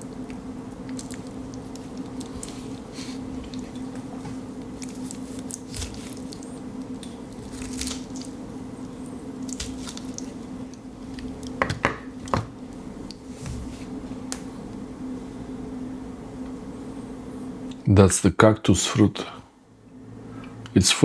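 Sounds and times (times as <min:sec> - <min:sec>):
steady low hum: 0:00.0 - 0:21.0
knife squishing and scraping fruit: 0:00.9 - 0:11.6.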